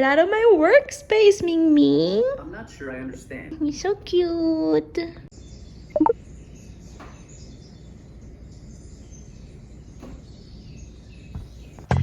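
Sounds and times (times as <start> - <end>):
faint high chirps: 5.3 - 11.4.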